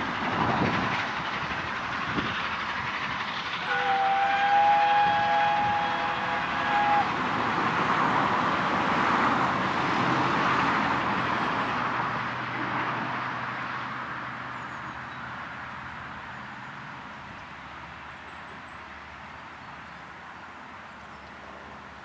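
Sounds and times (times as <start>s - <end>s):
train climbing past: 0.0s - 22.0s
steam locomotive whistle chord: 3.6s - 7.2s.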